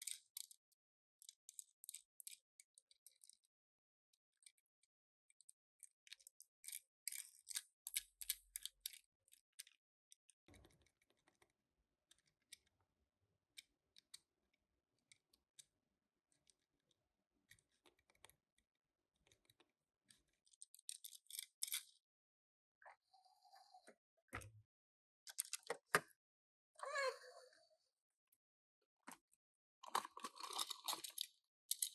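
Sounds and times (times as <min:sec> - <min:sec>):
packaging clicks and crinkles: 0:29.8 - 0:31.9.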